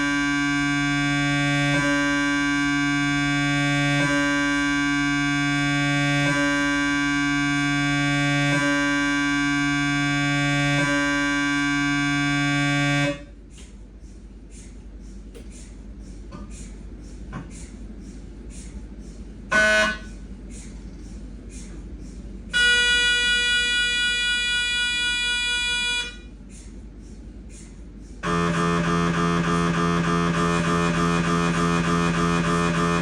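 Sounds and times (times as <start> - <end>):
mri scanner loud tone: 0.0 - 13.3, 19.5 - 20.2, 22.5 - 26.4, 28.2 - 33.0.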